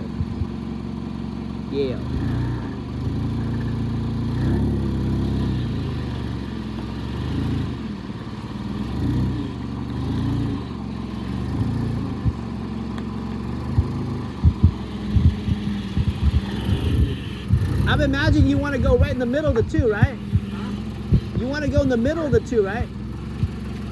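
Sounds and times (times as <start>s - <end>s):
forklift engine revving: 0.0s - 23.9s
sharp knocks: 13.8s - 22.1s.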